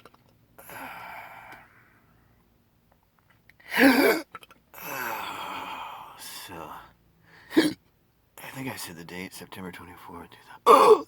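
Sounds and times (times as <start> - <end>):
man hiccuping: 3.7 - 5.1, 7.5 - 7.8, 10.7 - 11.0.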